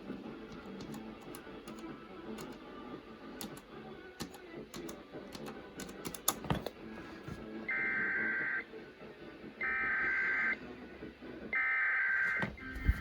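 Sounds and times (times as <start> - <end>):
keyboard typing clicks: 0.5 - 2.6, 4.2 - 6.7.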